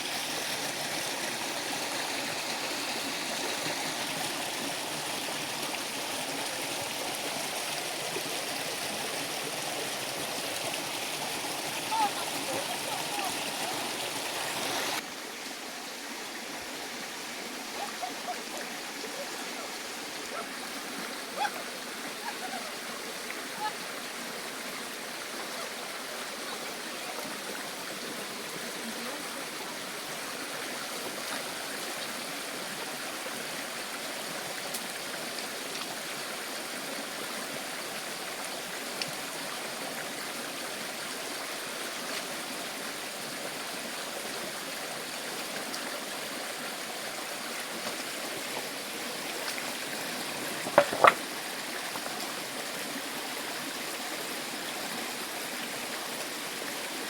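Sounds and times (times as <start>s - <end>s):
stream water over rocks: 0.0s - 57.0s
sharp knocks: 50.6s - 51.2s.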